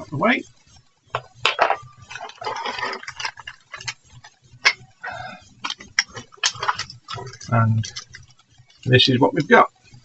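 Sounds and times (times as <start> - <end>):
plastic parts clicking and tapping: 1.1 - 4.9, 5.6 - 9.6.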